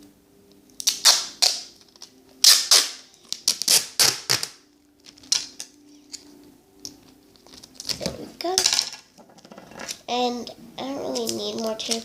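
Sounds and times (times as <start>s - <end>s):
duct tape being folded: 0.8s - 6.2s, 7.0s - 8.2s.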